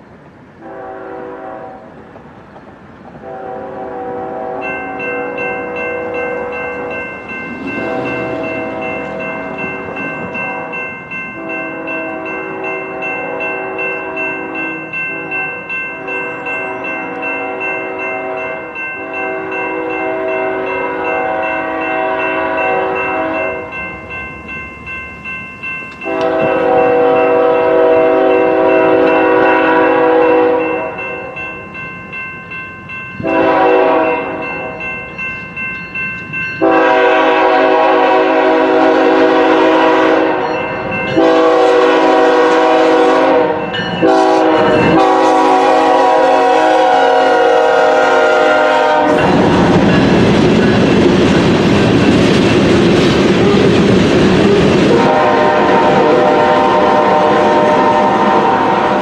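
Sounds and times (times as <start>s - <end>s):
locomotive air horn blasts: 0.6s - 1.9s, 3.2s - 7.0s, 7.7s - 9.4s, 11.4s - 23.7s, 26.0s - 31.4s, 33.2s - 34.8s, 36.6s - 49.8s, 54.9s - 59.0s
train wheels clicking over rail joints: 49.1s - 56.5s.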